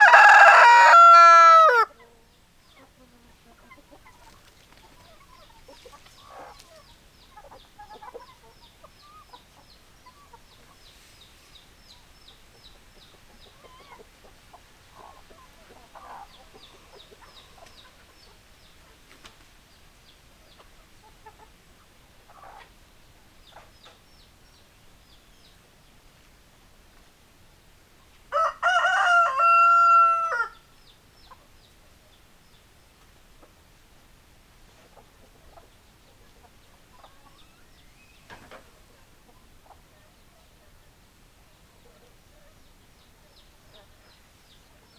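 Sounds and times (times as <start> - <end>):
rooster crowing: 0.0 - 2.0, 28.3 - 30.6
hens clucking: 0.0 - 19.4, 20.1 - 24.0, 34.6 - 44.2.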